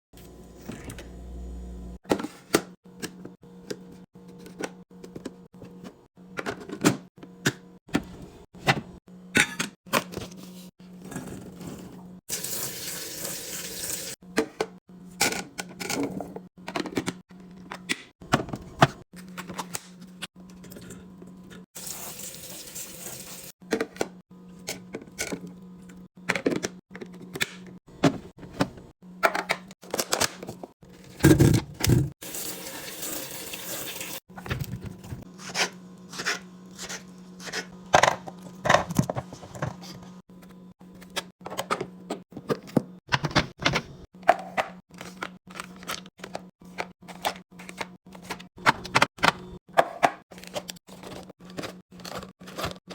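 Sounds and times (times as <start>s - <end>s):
food containers clicking and clunking: 26.2s - 32.1s, 37.4s - 52.8s.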